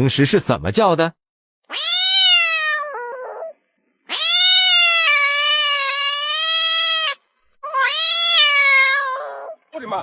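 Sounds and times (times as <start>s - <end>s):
bird mimicking cat meow: 1.7s - 9.6s.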